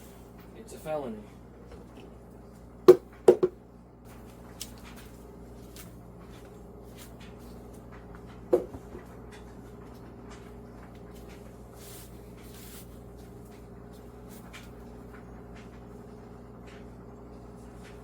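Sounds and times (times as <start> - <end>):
steady low hum: 0.0 - 18.0
sharp knocks: 2.9 - 3.6.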